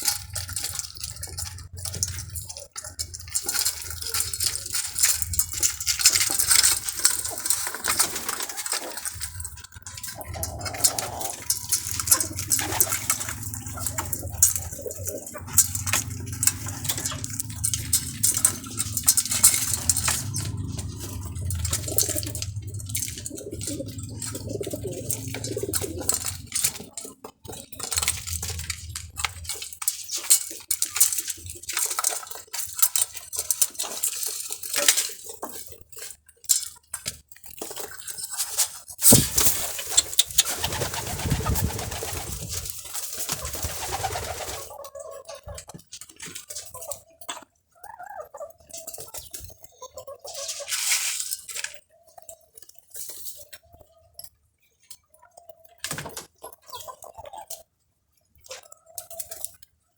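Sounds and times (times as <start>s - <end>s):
dishes clinking and scraping: 0.0s - 35.0s
low hum: 9.2s - 26.9s.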